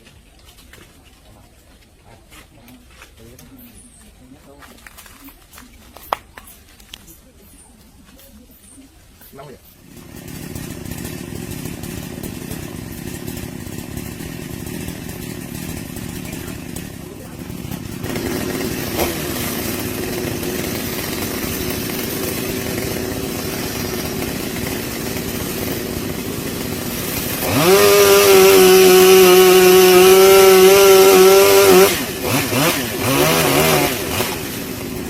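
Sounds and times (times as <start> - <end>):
chainsaw revving: 9.7 - 35.0.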